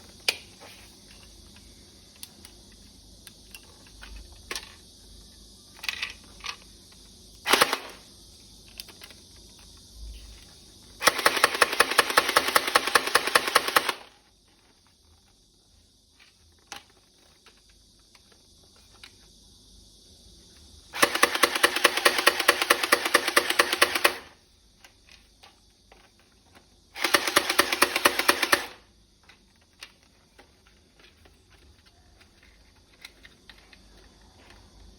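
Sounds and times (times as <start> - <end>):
toy rifle firing full auto: 7.4 - 8.1, 11.0 - 14.1, 20.9 - 24.4, 27.0 - 28.9.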